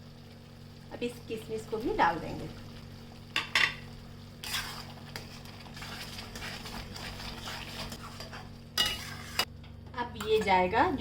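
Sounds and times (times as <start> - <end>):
metal spoon scraping a pan: 4.4 - 9.5.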